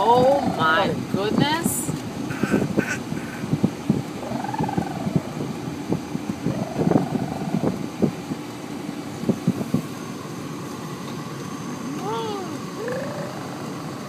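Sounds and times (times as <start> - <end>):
drawn-out vocal call: 2.2 - 5.6, 6.4 - 7.9, 11.8 - 14.0.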